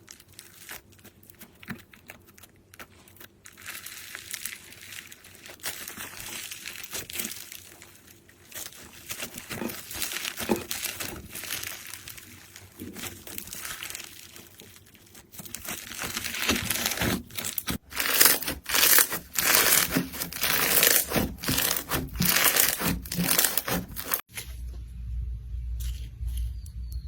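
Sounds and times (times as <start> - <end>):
slime crackling and crunching: 0.0 - 24.5
low rumble: 24.6 - 27.0.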